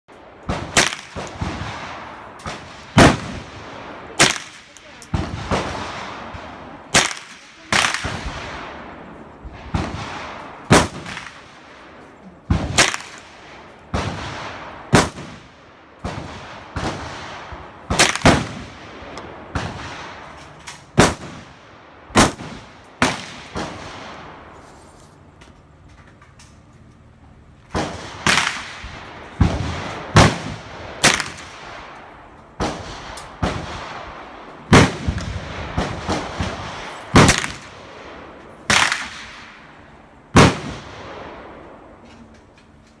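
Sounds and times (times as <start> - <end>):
sharp gunshots with echo: 0.5 - 11.7, 12.5 - 20.2, 21.0 - 24.4, 27.7 - 32.0, 32.6 - 39.6, 40.3 - 41.6.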